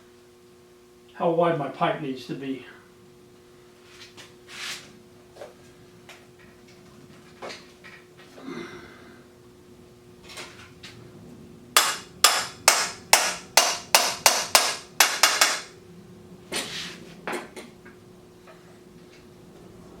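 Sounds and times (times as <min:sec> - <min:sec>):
hammer strikes: 0:11.8 - 0:15.7.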